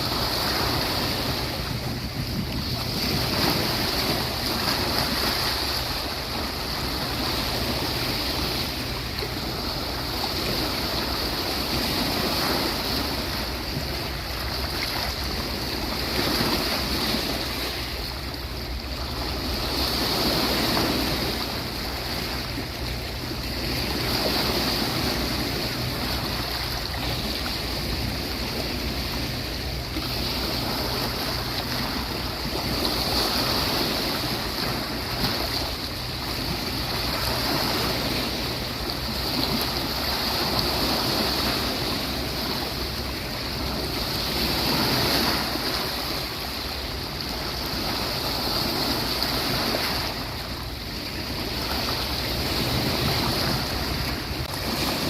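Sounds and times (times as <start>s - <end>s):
sea waves washing onto beach: 0.0s - 55.0s.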